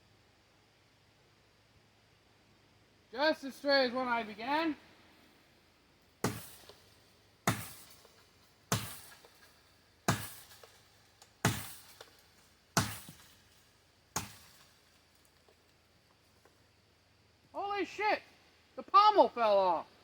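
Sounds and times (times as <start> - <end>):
blade chopping into tree trunk: 6.2 - 14.8.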